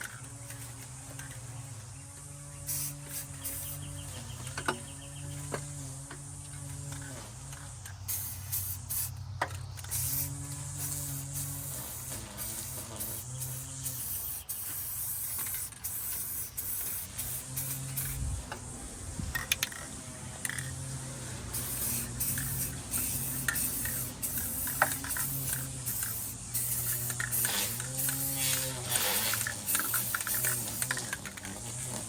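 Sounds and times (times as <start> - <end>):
spray can hissing: 0.1 - 32.0.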